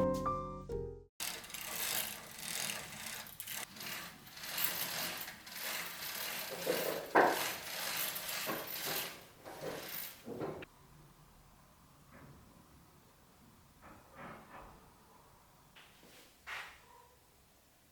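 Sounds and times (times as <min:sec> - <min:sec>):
rubbing and scraping: 0:01.2 - 0:10.7.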